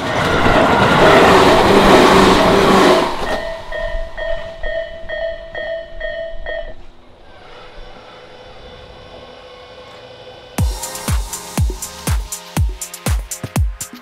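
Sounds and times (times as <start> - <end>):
level-crossing warning bell ringing: 0.0 - 7.0.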